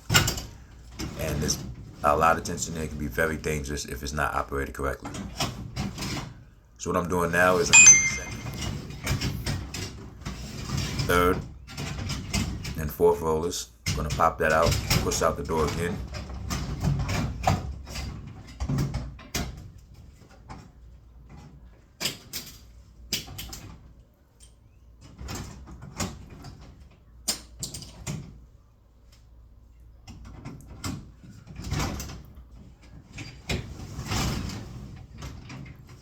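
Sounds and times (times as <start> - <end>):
scraping rattles of door: 5.0 - 6.7, 8.6 - 13.0, 13.9 - 24.0, 30.1 - 36.0.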